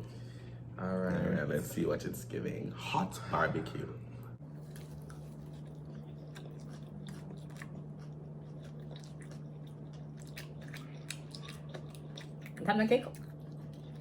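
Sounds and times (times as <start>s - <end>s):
steady low hum: 0.0s - 14.0s
chewing and crunching: 4.4s - 14.0s.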